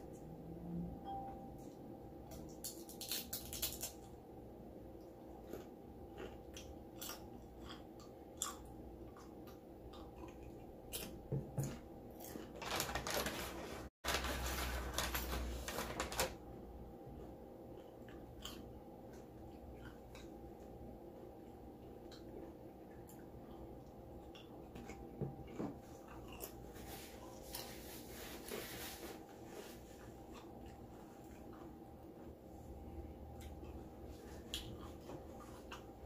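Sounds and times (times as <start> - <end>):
chewing: 5.2 - 11.2, 17.2 - 20.7, 21.4 - 27.8, 30.0 - 32.3, 33.3 - 36.0
rustling or scraping: 12.6 - 16.3, 26.7 - 30.2.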